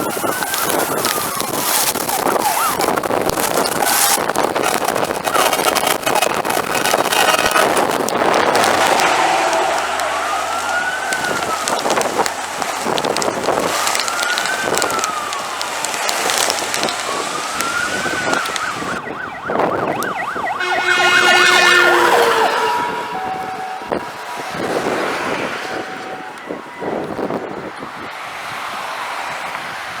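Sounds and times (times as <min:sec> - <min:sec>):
fire engine siren wailing: 0:00.0 - 0:28.1
road and engine noise: 0:00.0 - 0:30.0
steady horn tone: 0:05.2 - 0:14.0, 0:20.1 - 0:26.4.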